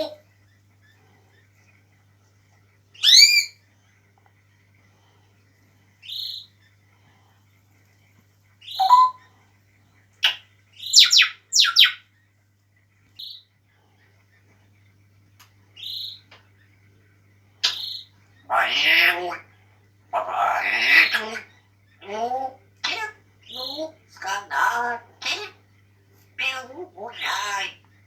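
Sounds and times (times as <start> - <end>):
parrot chirping: 3.0 - 3.6, 8.6 - 9.3, 10.2 - 12.1, 20.1 - 25.6, 26.4 - 27.8.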